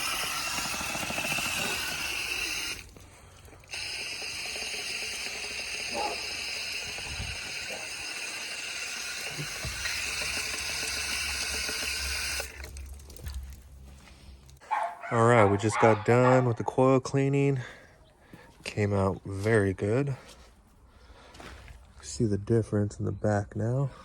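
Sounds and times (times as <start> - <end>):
water spraying on coil: 0.0 - 13.8.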